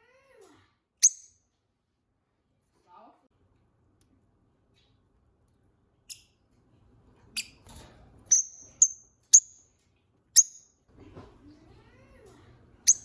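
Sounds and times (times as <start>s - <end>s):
bird high-pitched chirps: 1.0s - 1.4s, 10.4s - 10.7s.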